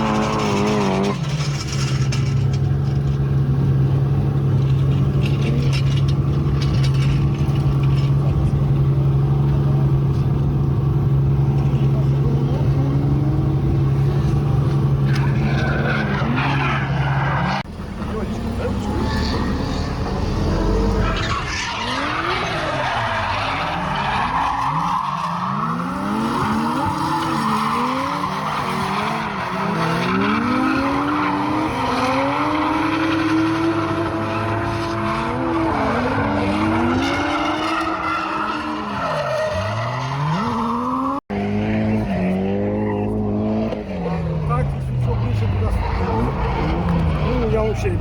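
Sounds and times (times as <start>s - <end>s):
car engine revving: 0.0s - 48.0s
tyres squealing: 18.6s - 41.2s.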